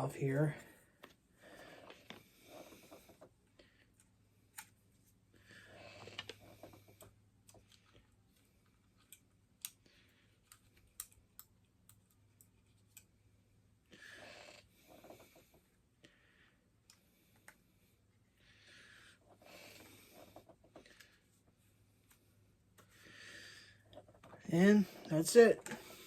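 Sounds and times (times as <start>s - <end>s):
small plastic clicks and rustling: 6.0s - 13.1s.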